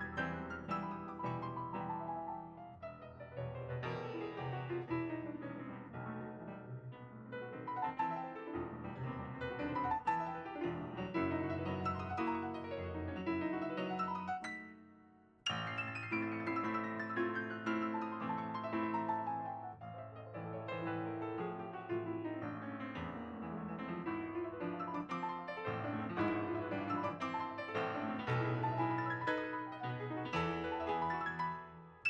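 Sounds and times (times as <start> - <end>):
piano playing: 0.0 - 32.0.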